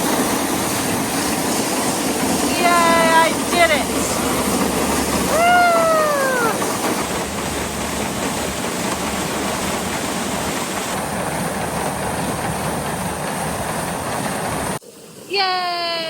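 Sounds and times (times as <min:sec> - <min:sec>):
tractor running: 0:00.0 - 0:14.8
wind: 0:00.0 - 0:16.0
woman cheering: 0:05.3 - 0:06.8, 0:15.3 - 0:16.0.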